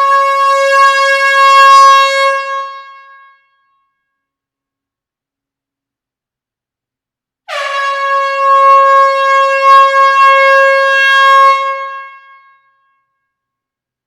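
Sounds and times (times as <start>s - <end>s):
air horn blast: 7.5s - 12.6s.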